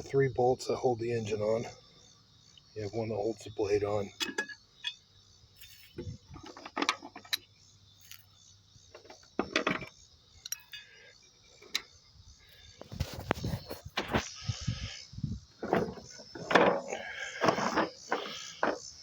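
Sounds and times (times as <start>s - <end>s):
metal tools clinking and rattling: 9.4s - 10.9s, 15.6s - 18.8s.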